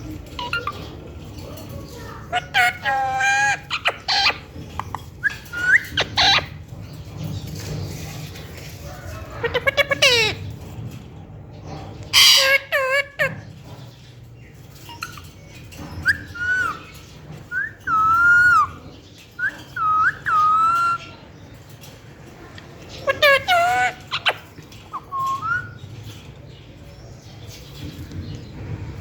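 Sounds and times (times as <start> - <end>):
parrot calling: 0.4 - 0.9, 2.0 - 6.6, 9.2 - 10.5, 12.1 - 13.4, 16.0 - 18.8, 19.4 - 21.1, 23.0 - 25.8
harsh parrot squawk: 12.2 - 13.3.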